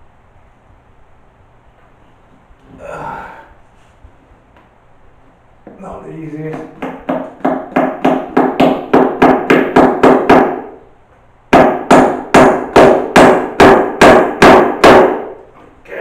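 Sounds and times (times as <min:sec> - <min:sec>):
hammer blows: 0:11.5 - 0:15.5.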